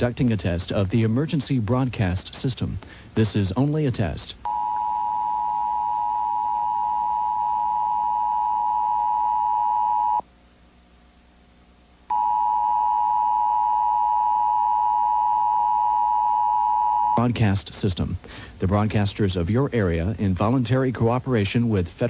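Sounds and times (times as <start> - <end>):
two-tone alarm: 4.5 - 10.2, 12.1 - 17.2.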